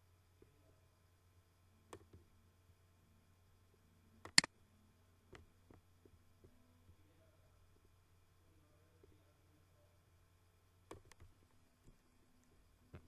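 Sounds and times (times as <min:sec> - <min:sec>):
faint low hum: 0:00.0 - 0:13.0
computer mouse clicking: 0:04.2 - 0:04.5.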